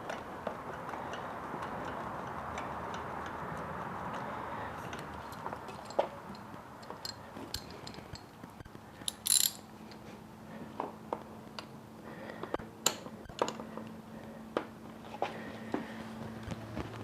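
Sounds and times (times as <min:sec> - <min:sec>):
socket ratchet clicking: 0:09.1 - 0:09.6.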